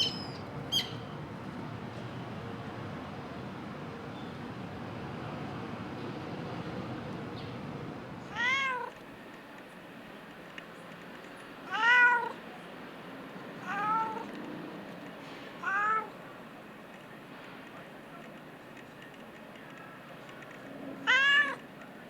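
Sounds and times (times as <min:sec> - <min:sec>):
cat meowing: 0:08.3 - 0:09.0, 0:11.7 - 0:12.4, 0:13.6 - 0:14.3, 0:15.6 - 0:16.2, 0:21.0 - 0:21.6.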